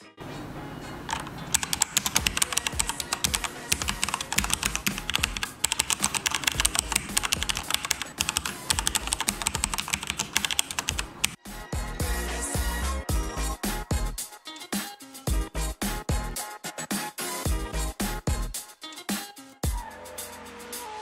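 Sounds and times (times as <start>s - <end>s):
background music: 0.0s - 21.0s
fast typing on mechanical keyboard: 1.1s - 11.4s.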